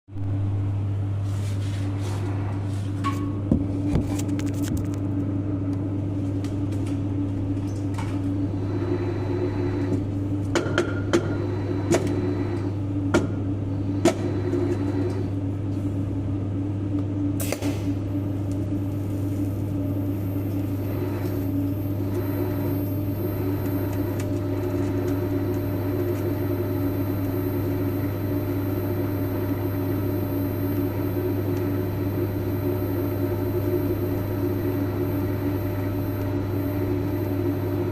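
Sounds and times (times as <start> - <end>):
welding arc buzzing: 17.4 - 37.9.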